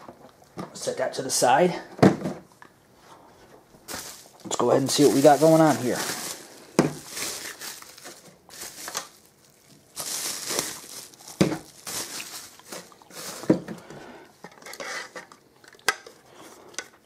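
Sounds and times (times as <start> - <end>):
packaging crinkling and rustling: 3.7 - 16.2.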